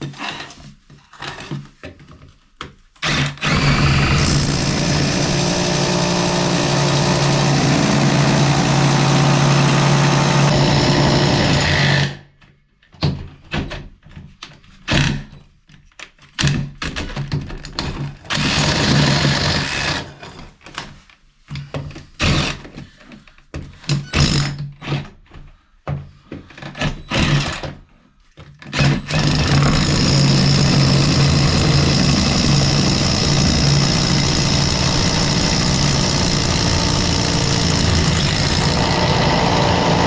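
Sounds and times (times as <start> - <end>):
electric power tool running: 3.1 - 12.1, 29.1 - 40.0.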